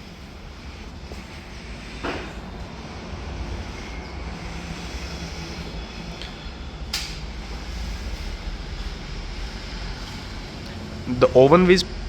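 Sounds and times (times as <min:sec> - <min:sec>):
oven fan humming: 0:00.0 - 0:12.0
sharp click: 0:06.9 - 0:07.2.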